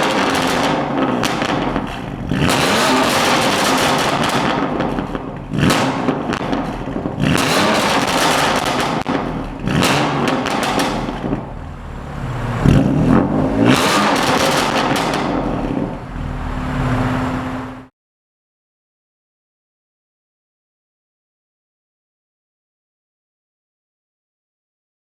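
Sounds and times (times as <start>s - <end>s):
exhaust crackling bursts: 0.0s - 17.8s
car engine revving: 0.0s - 17.9s.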